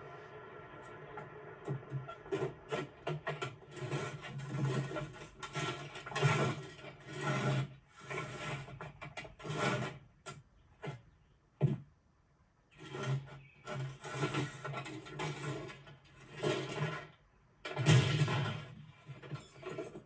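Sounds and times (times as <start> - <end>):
rough scraping and rubbing: 1.9 - 10.1, 12.7 - 17.2.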